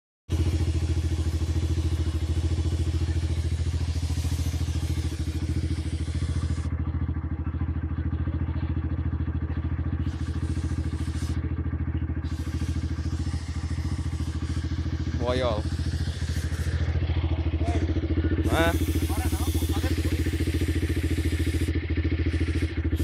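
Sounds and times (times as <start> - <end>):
motorcycle engine idling: 0.3 - 23.0.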